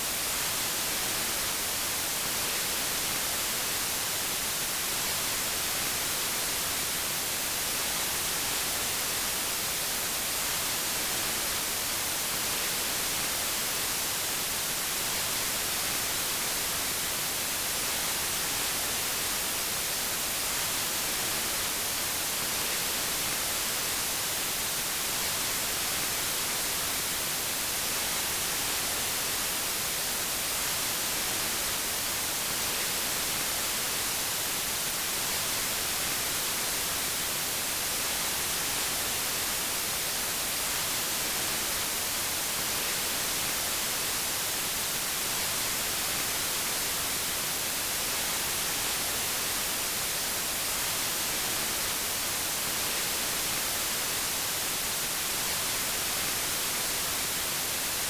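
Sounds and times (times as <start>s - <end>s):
steady white noise: 0.0s - 58.0s.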